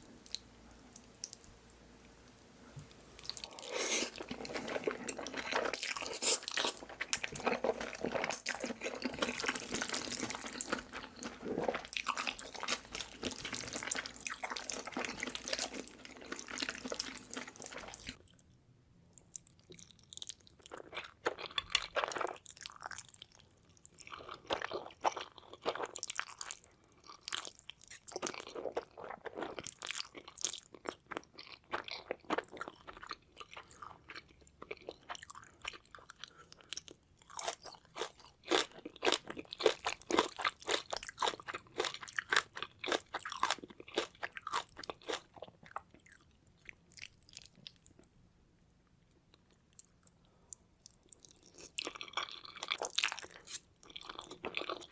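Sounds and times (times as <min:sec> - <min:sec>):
chewing and crunching noodles: 0:02.8 - 0:18.4, 0:19.2 - 0:48.2, 0:49.2 - 0:54.9.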